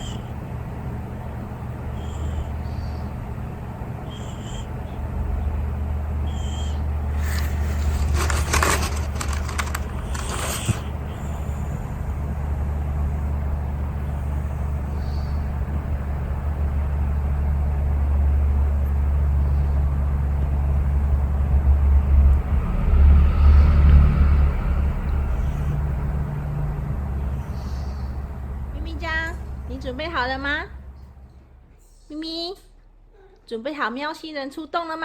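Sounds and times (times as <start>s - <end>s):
steady low rumble: 10.8s - 33.2s.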